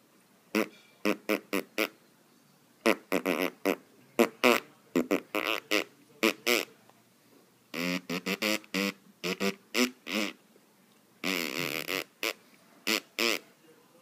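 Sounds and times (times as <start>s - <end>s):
person blowing raspberries: 0.5s - 2.0s, 2.8s - 6.8s, 7.7s - 10.4s, 11.2s - 13.5s.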